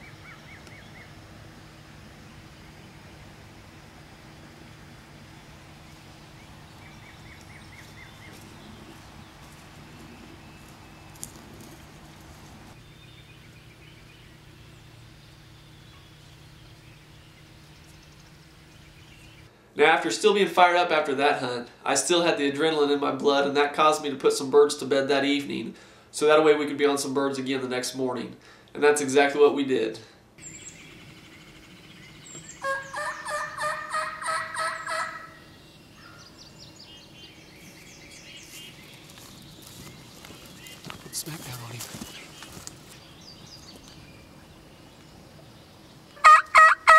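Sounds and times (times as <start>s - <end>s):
low hum: 0.0s - 19.6s
songbirds chirping faintly: 0.0s - 20.4s, 29.7s - 46.6s
turkey gobbling: 32.5s - 36.2s, 46.2s - 46.9s.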